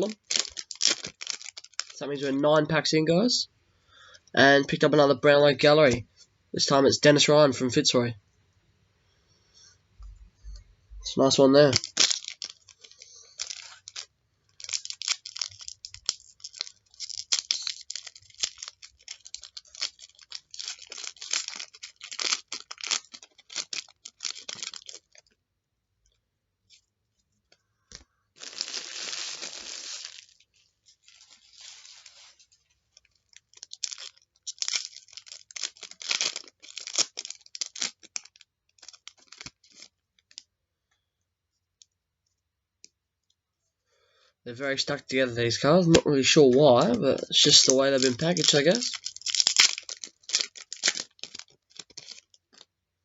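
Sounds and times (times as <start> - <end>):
wrapper tearing: 0.0 - 2.0, 11.6 - 25.3, 27.9 - 40.5, 45.5 - 52.7
wrapper crinkling: 0.0 - 2.3, 11.6 - 25.4, 27.6 - 40.5, 44.8 - 52.8.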